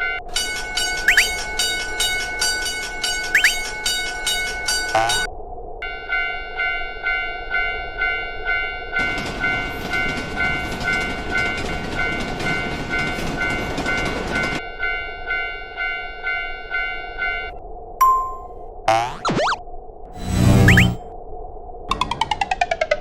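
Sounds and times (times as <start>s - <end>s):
crossing bell clanging: 0.3s - 5.3s, 9.0s - 17.0s
steady low tone: 17.6s - 21.0s.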